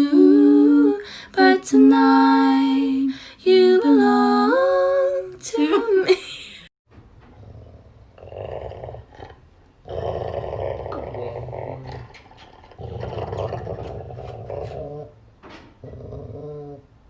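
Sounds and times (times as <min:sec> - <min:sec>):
dog growling: 0:07.3 - 0:15.2, 0:15.8 - 0:16.9.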